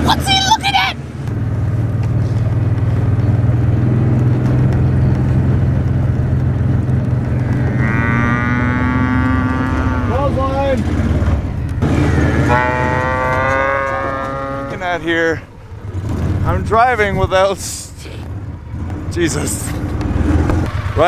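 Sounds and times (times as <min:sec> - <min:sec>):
vehicle engine running: 0:00.0 - 0:21.0
cow mooing: 0:07.3 - 0:10.6, 0:11.8 - 0:15.1.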